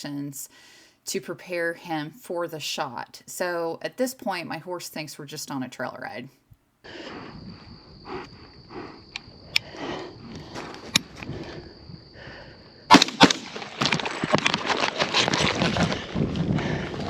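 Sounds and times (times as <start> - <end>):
wind: 6.8 - 17.0
rifle shot: 12.9 - 14.0
horse hooves clattering: 12.9 - 17.0.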